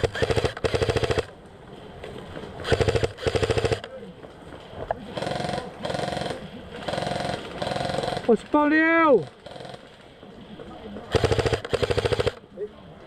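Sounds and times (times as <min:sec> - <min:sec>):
airsoft rifle firing bursts: 0:00.0 - 0:01.3, 0:02.6 - 0:03.9, 0:05.1 - 0:08.4, 0:09.2 - 0:09.9, 0:11.1 - 0:12.4.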